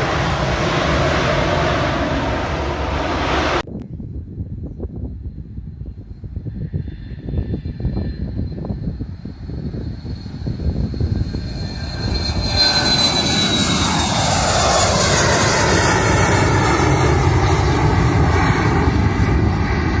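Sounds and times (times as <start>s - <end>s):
jet engine whine and roar: 0.0s - 20.0s.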